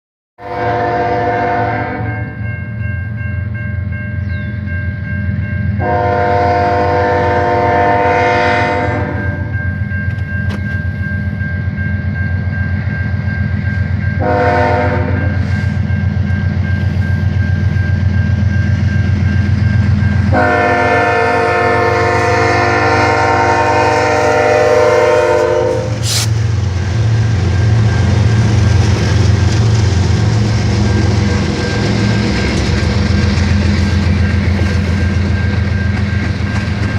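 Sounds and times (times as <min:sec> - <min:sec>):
locomotive air horn blasts: 0:00.4 - 0:02.2, 0:05.8 - 0:09.5, 0:14.2 - 0:15.6, 0:20.3 - 0:26.4
wheels clattering on rails: 0:27.4 - 0:36.9.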